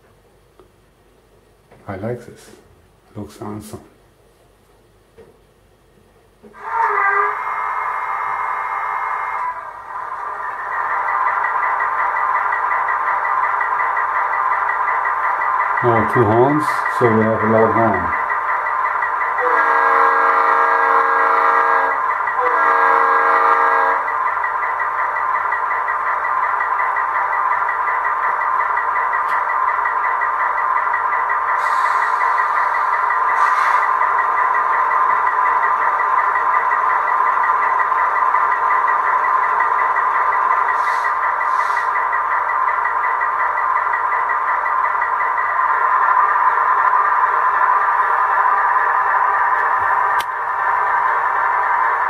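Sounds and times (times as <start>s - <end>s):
model diesel engine sound: 6.4s - 52.0s
model train air horn blasts: 19.4s - 24.1s.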